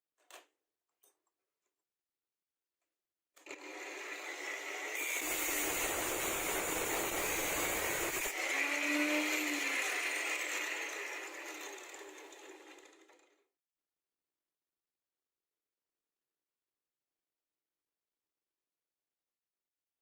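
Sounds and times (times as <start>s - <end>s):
power tool grinding whirr: 3.4s - 13.3s.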